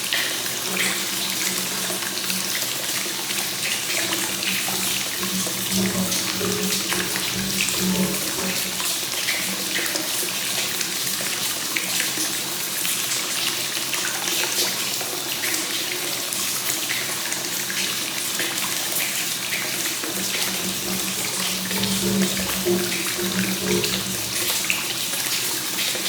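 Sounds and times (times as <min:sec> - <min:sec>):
water pouring into a bath: 0:00.0 - 0:26.0.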